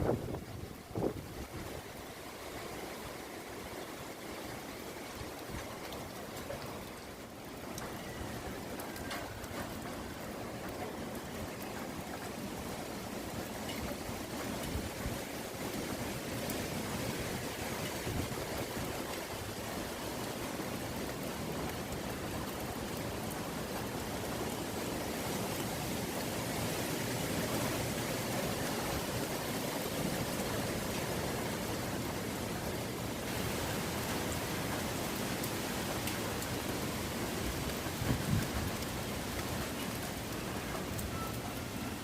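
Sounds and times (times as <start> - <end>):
strong wind blowing: 0.0 - 1.8.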